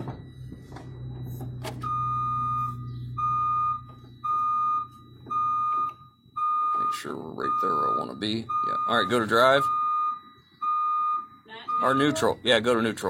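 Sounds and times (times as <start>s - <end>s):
low steady hum: 0.0s - 13.0s
truck backup alarm beeping: 0.0s - 13.0s.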